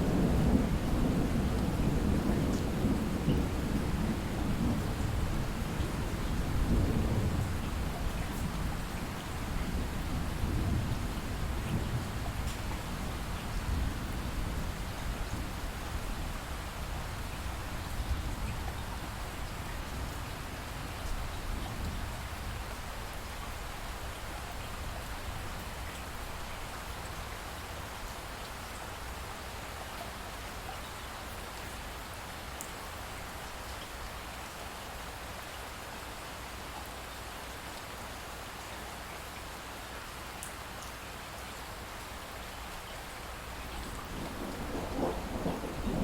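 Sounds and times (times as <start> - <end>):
steady rain falling: 0.0 - 46.0
thunder rumble: 43.8 - 46.0.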